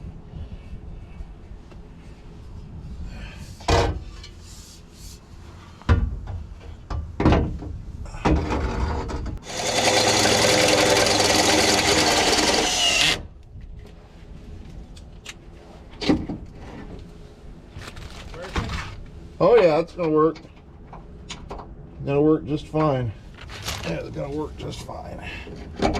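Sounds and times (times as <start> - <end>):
power tool running: 9.4 - 13.3.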